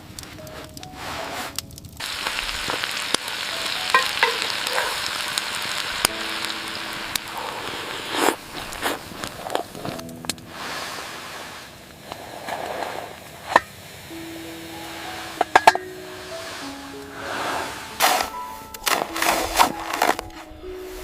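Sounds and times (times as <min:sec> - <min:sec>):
food sizzling in a pan: 0:00.9 - 0:18.6.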